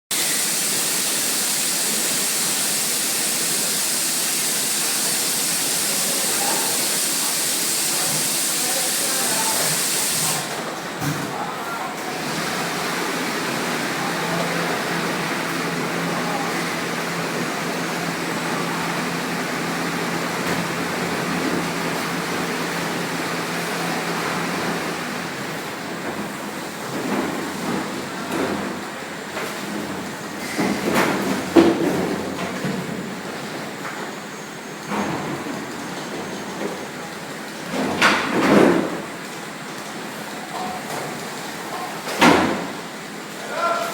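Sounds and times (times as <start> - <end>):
filling machine hissing and humming: 0.1 - 10.8.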